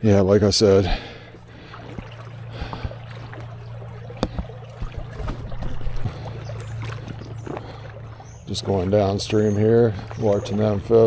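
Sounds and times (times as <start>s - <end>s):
water sloshing around wading legs: 0.6s - 11.0s
small irregular knocks: 4.1s - 6.3s.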